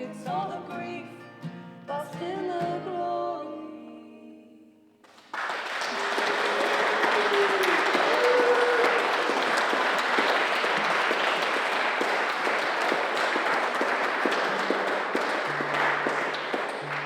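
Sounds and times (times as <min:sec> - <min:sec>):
audience applause: 0:05.1 - 0:17.0.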